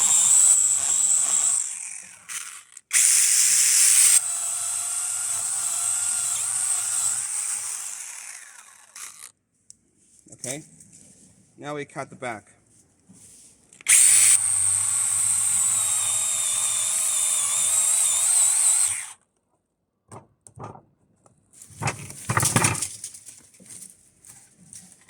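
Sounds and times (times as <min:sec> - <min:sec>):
battery chainsaw whine: 0:00.0 - 0:09.3, 0:13.9 - 0:19.2.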